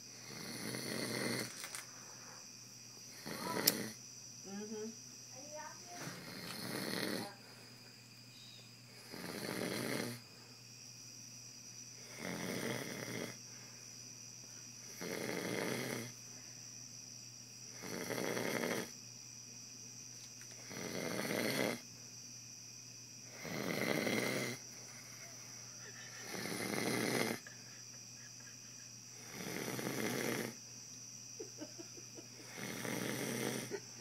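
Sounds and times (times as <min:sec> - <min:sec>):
man snoring: 0:00.0 - 0:01.5, 0:03.1 - 0:04.0, 0:06.1 - 0:07.4, 0:08.9 - 0:10.2, 0:12.0 - 0:13.5, 0:14.8 - 0:16.2, 0:17.7 - 0:19.0, 0:20.6 - 0:21.8, 0:23.3 - 0:25.2, 0:26.2 - 0:27.5, 0:29.1 - 0:30.6, 0:32.4 - 0:33.8.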